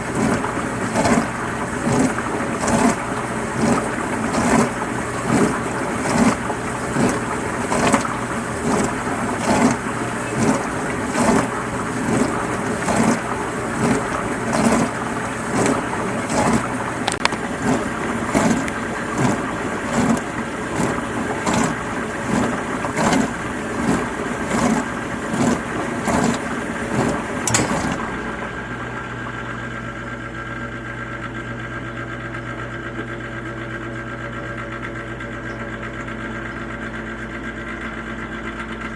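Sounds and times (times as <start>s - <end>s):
dishwasher water swishing: 0.0s - 30.0s
dishwasher motor hum: 0.0s - 38.9s.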